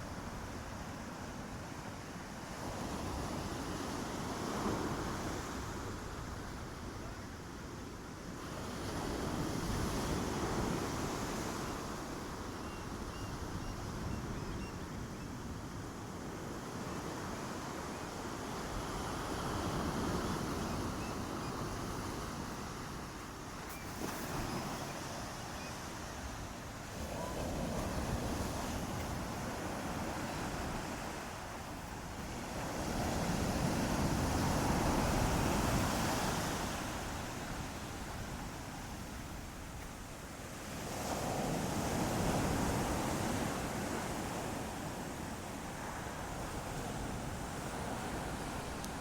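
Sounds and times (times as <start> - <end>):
ocean waves breaking: 18.6 - 39.9.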